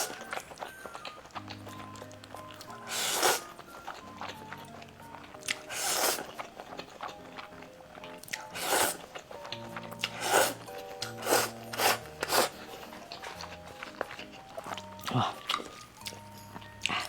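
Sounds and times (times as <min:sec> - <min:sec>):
background music: 0:00.0 - 0:17.0
eating mouth sounds: 0:00.0 - 0:17.0.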